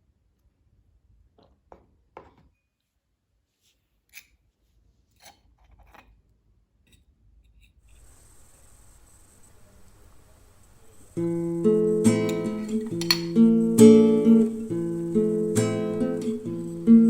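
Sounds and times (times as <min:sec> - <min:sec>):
guitar tune: 0:08.0 - 0:17.0.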